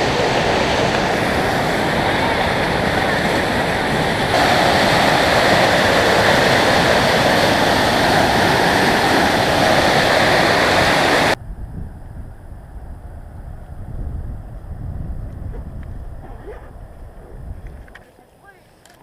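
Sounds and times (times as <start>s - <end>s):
river rushing loudly: 0.0s - 11.4s.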